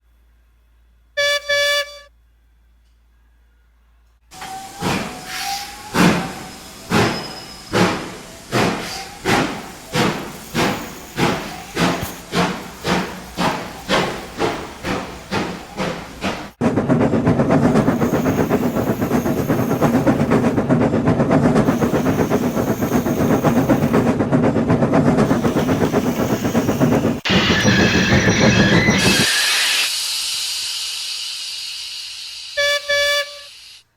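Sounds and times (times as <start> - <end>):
steam locomotive exhaust chuffs: 4.3 - 33.9
dense rushing hiss: 29.2 - 33.9.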